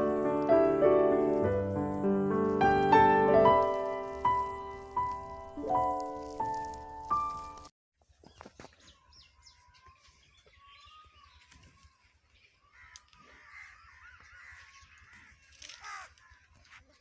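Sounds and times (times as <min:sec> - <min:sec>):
faint birdsong: 0:08.1 - 0:17.0
crow cawing: 0:12.6 - 0:16.8.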